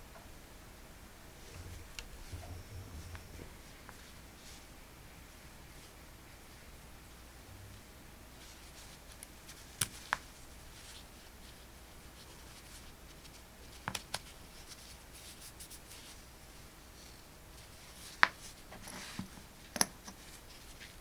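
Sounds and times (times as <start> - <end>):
faint scratching and rustling: 1.4 - 4.9, 5.7 - 19.5, 20.1 - 21.0.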